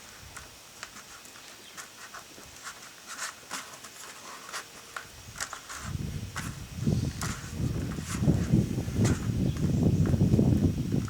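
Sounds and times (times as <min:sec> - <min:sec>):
hands rustling through soil: 0:00.0 - 0:11.0.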